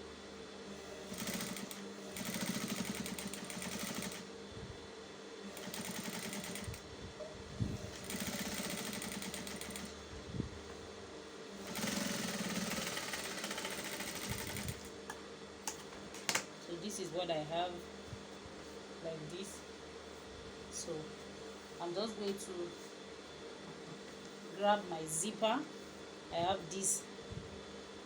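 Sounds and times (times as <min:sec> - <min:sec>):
sewing machine stitching: 0:01.1 - 0:04.2, 0:05.6 - 0:06.8, 0:08.0 - 0:09.9, 0:11.7 - 0:14.9.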